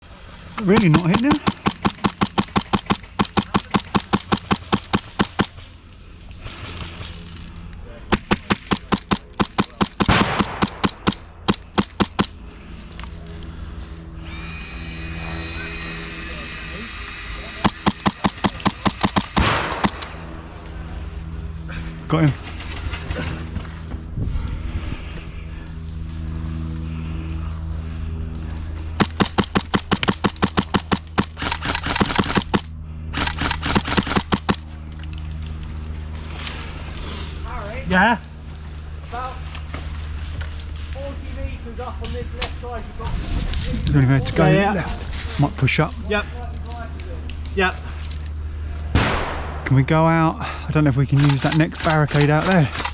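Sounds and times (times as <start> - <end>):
steady low hum: 0.0 - 52.9
airsoft gun rapid shots: 0.6 - 5.6, 8.1 - 12.4, 17.6 - 20.1, 29.0 - 34.6, 51.2 - 52.9.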